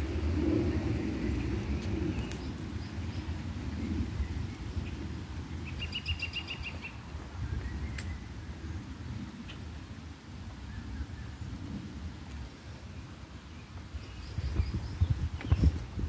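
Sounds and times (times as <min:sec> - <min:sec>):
steady rain: 0:00.0 - 0:16.0
bird chirping: 0:05.6 - 0:08.3.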